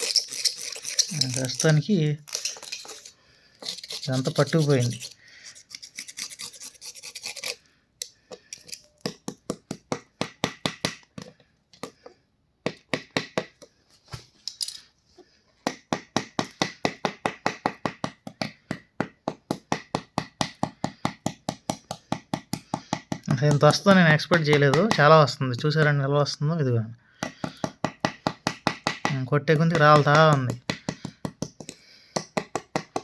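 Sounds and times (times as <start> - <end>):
blade scraping scale off metal rod: 0.0 - 7.7.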